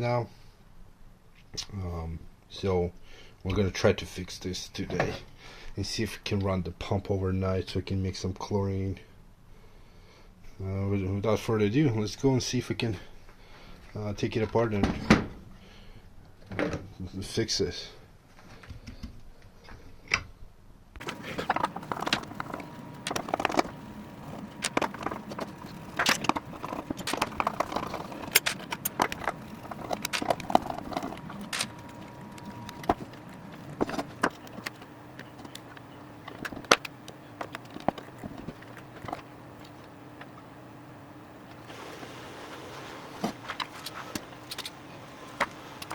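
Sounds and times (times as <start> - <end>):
steady background hum: 0.0 - 45.9
hand tools clicking and clinking: 21.0 - 39.7.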